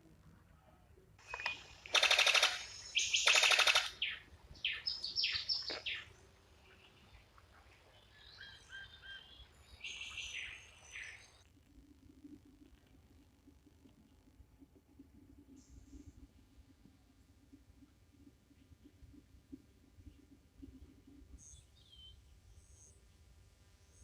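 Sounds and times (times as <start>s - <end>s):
birds calling with rattling trills: 1.2s - 6.1s.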